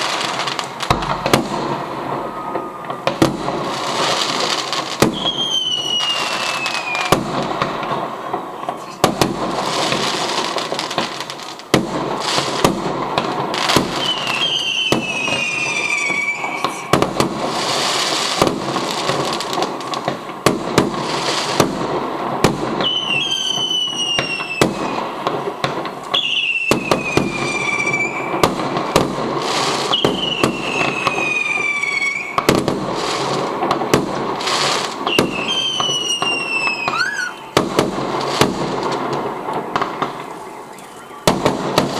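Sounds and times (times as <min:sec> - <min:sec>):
fireworks banging: 0:00.0 - 0:41.9
fireworks crackling: 0:00.0 - 0:41.9
falling whistles: 0:02.1 - 0:07.2, 0:13.8 - 0:17.8, 0:22.8 - 0:25.0, 0:26.1 - 0:28.4, 0:29.7 - 0:32.5, 0:34.5 - 0:37.6, 0:39.7 - 0:41.9.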